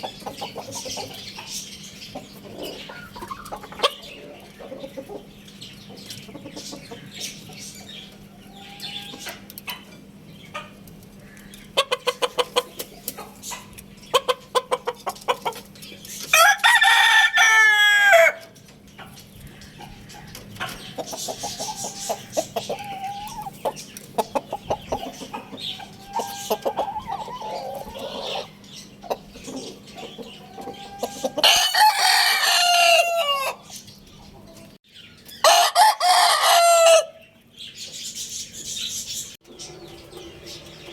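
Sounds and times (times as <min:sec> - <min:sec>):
chickens clucking: 0:00.0 - 0:40.9
rooster crowing loudly: 0:16.3 - 0:18.4, 0:31.4 - 0:33.6, 0:35.4 - 0:37.2.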